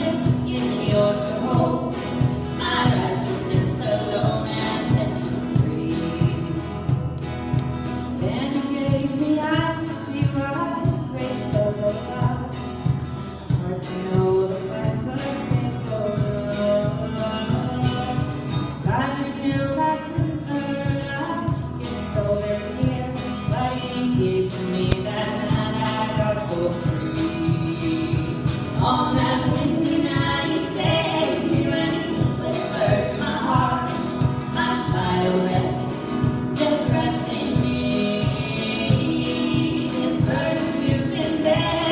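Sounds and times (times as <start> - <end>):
person singing: 0.0 - 12.8, 13.4 - 41.9.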